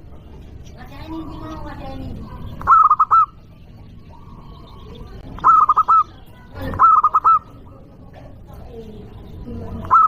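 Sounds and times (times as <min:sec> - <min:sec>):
dove cooing: 0:01.1 - 0:03.4, 0:04.0 - 0:08.3, 0:09.8 - 0:10.0.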